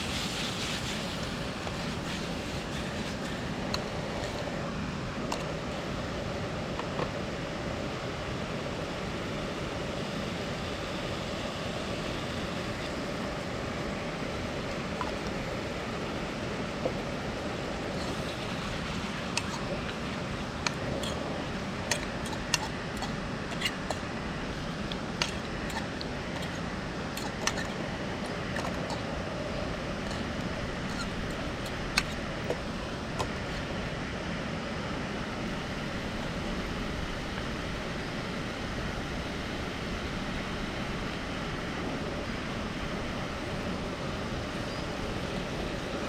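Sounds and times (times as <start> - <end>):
cascading water rushing: 12.0 - 34.4.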